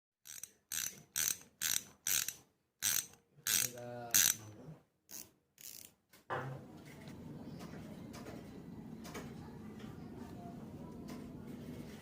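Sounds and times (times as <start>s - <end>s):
fishing reel drag clicker ratcheting: 0.2s - 4.4s.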